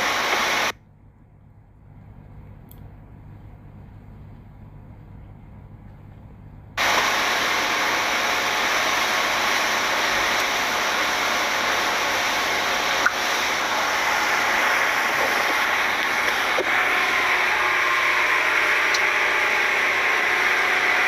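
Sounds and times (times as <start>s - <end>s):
rushing hiss: 0.0s - 0.7s, 6.8s - 21.0s
low steady hum: 0.0s - 7.7s.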